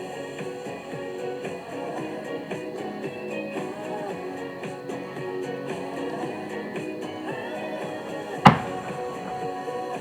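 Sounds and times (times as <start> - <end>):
pop song with strummed guitar: 0.0 - 10.0.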